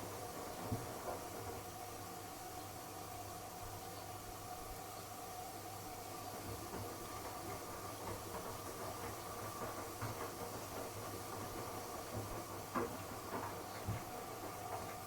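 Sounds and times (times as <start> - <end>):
soft knocks of tumbling drum: 0.0 - 1.7, 6.2 - 15.0
washing machine motor humming: 0.0 - 15.0.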